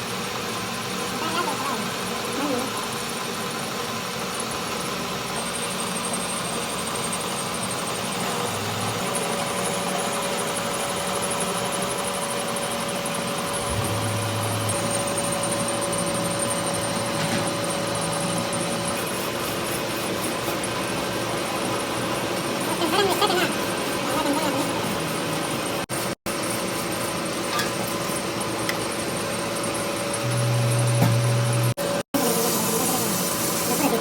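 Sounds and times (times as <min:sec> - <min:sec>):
thin steady whine: 0:04.4 - 0:25.8
low hum: 0:13.4 - 0:16.9
machine hiss: 0:32.2 - 0:34.0.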